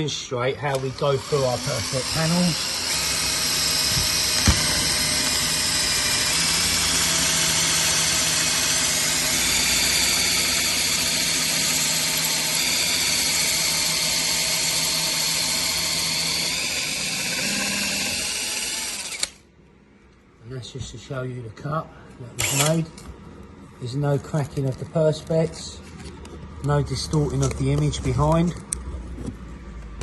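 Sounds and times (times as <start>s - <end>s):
electric drill boring plastic: 0.6s - 19.4s, 22.4s - 22.8s.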